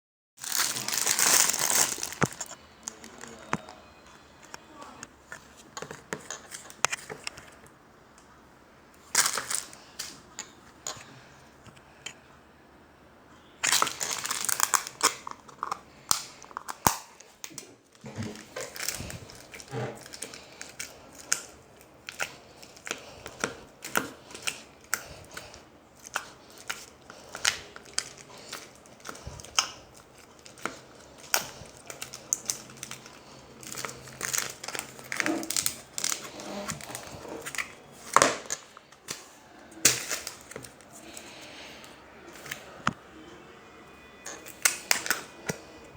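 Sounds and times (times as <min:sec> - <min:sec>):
slime squeezed by hand crackling: 0:00.4 - 0:03.8.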